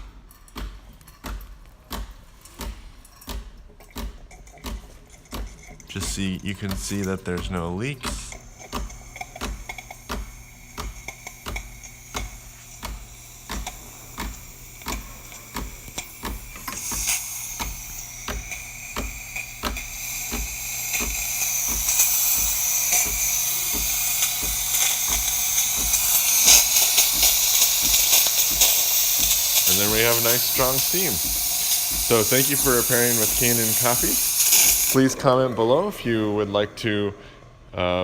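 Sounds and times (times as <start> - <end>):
espresso machine pump pulsing: 0.0 - 36.9
steam hissing from wand: 5.8 - 35.2.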